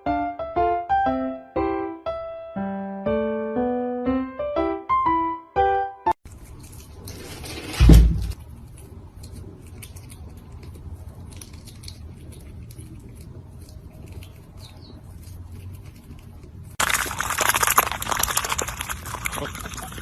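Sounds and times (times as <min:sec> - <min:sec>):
rustling: 0:06.3 - 0:20.0.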